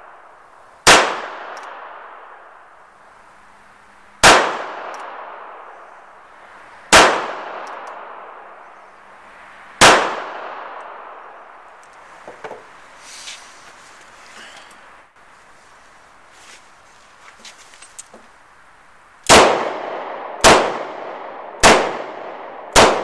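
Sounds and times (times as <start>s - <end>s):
handgun shots: 21.6s - 23.0s.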